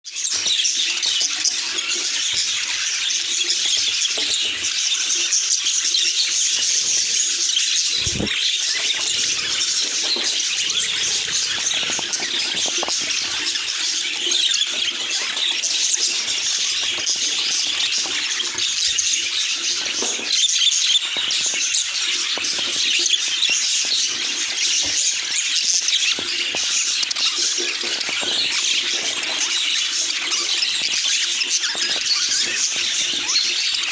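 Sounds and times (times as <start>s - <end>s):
budgerigars chattering and chirping: 0.1s - 33.9s.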